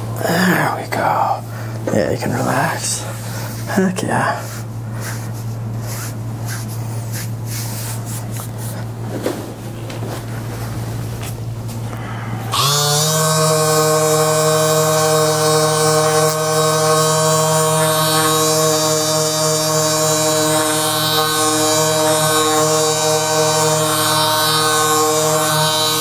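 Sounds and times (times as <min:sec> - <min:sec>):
low steady drone: 0:10.4 - 0:26.0
sustained synth pad: 0:11.6 - 0:26.0.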